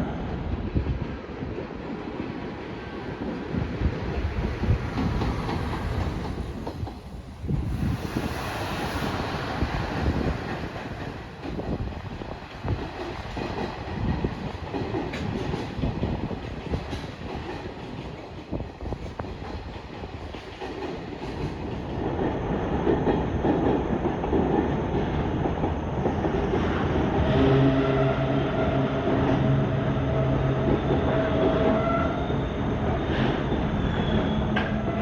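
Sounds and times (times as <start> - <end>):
train wheels clacking over rail joints: 4.1 - 8.0, 9.1 - 26.8.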